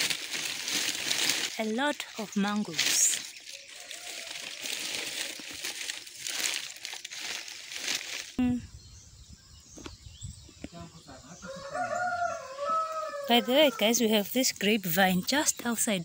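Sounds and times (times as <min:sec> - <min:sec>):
crinkling rustling noise: 0:00.0 - 0:08.4.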